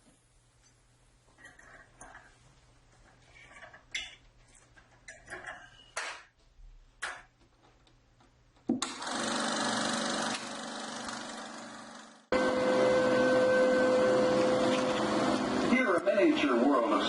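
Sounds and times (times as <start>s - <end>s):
film projector whirring: 8.8s - 17.0s.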